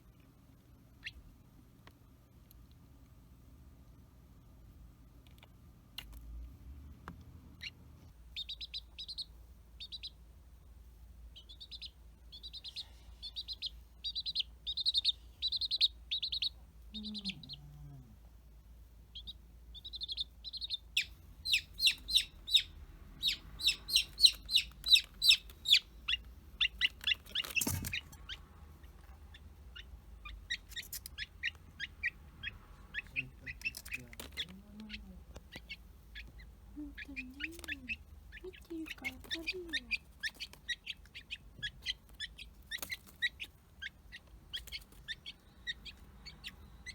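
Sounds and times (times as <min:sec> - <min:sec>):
chick peeping: 0:00.9 - 0:01.3, 0:07.5 - 0:10.3, 0:11.3 - 0:18.0, 0:19.1 - 0:46.9.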